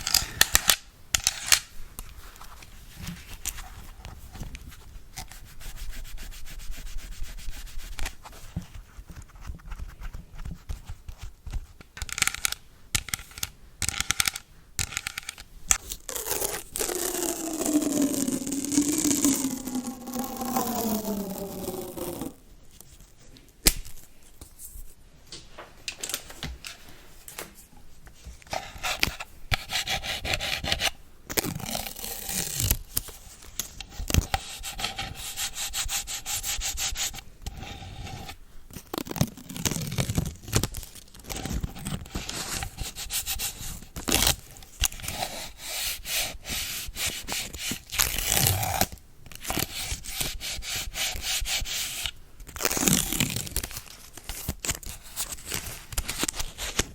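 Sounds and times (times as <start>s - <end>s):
brush scrubbing device: 16.3s - 22.4s.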